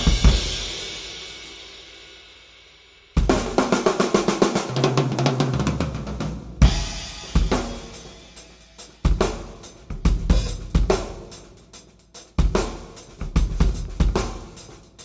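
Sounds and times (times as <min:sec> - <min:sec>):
drum kit playing: 0:00.0 - 0:02.2, 0:03.1 - 0:15.0
bass drum and cymbal hit: 0:00.0 - 0:02.3, 0:03.2 - 0:04.3, 0:06.5 - 0:15.0.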